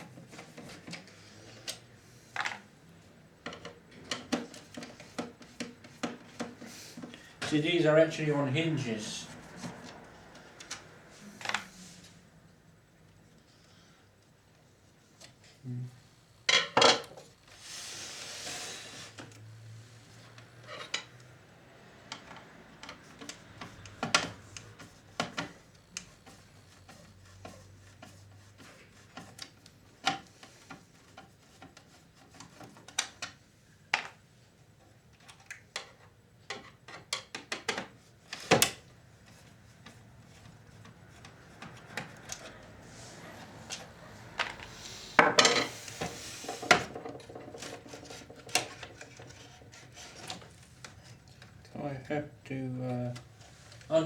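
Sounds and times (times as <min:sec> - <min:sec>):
hissy scrape: 0:17.5 - 0:19.2, 0:42.8 - 0:46.9.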